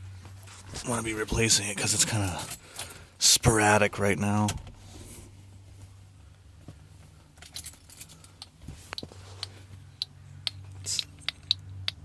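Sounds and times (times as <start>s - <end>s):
steady low hum: 0.0s - 12.0s
turn signal relay clicking: 8.4s - 12.0s.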